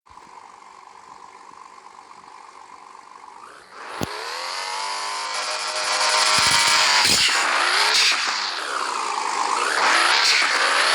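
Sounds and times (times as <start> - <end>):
turbocharged car engine revving: 3.4 - 10.9
sharp engine crack: 5.2 - 10.9.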